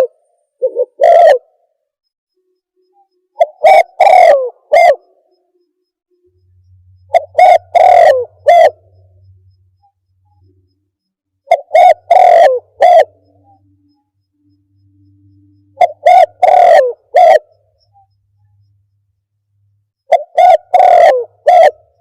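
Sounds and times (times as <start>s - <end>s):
dove cooing: 0.0s - 1.6s, 3.3s - 5.3s, 7.0s - 9.2s, 11.4s - 13.9s, 15.6s - 18.1s, 20.1s - 22.0s.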